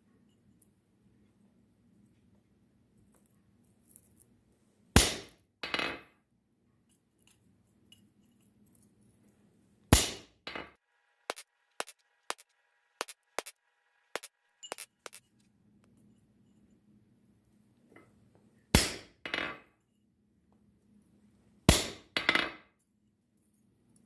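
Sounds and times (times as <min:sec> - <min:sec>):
hammer striking steel on anvil: 0:05.0 - 0:05.9, 0:09.9 - 0:10.7, 0:18.8 - 0:19.5, 0:21.7 - 0:22.5.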